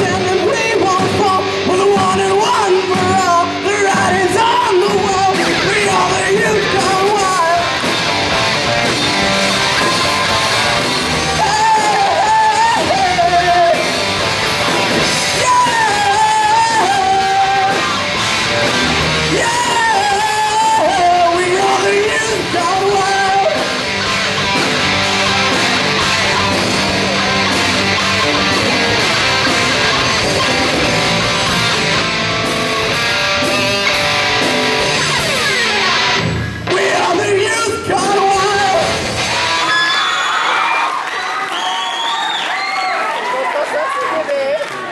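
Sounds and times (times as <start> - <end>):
wavering lead guitar melody: 0.0 - 39.7
instrumental rock music: 0.0 - 40.0.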